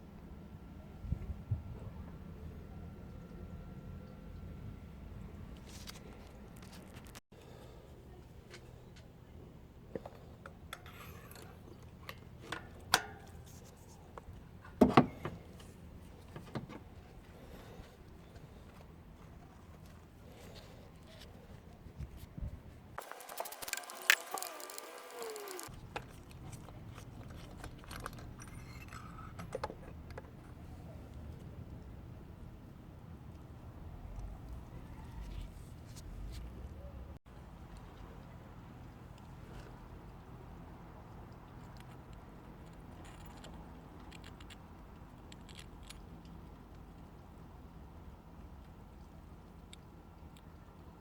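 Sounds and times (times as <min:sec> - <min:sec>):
engine running low hum: 0:00.0 - 0:51.0
clicks: 0:23.0 - 0:25.7.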